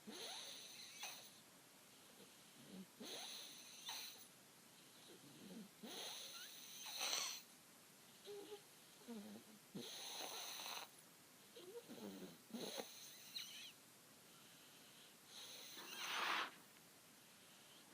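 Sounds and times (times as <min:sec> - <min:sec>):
baby snoring: 0:05.2 - 0:07.4, 0:08.3 - 0:10.9, 0:11.6 - 0:13.8, 0:15.3 - 0:16.6.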